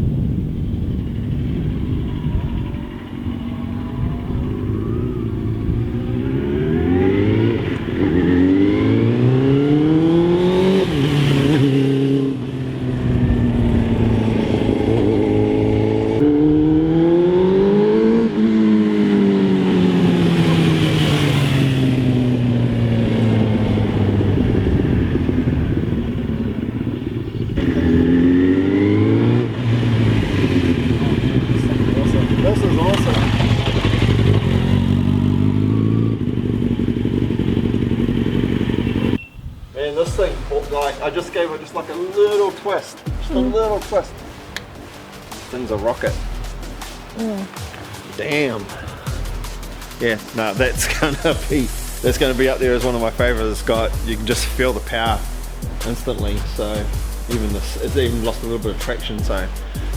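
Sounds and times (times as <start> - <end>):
wind rush on microphone: 0.0 - 6.3, 12.4 - 18.0, 19.6 - 28.0, 39.2 - 40.2
motorcycle engine accelerating: 0.0 - 39.2, 43.0 - 59.9.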